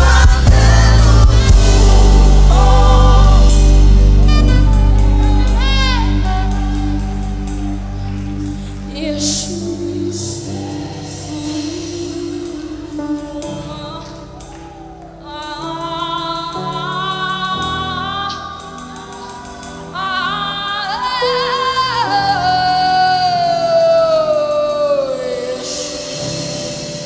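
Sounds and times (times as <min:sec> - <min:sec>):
instrumental backing chords: 0:00.0 - 0:16.2.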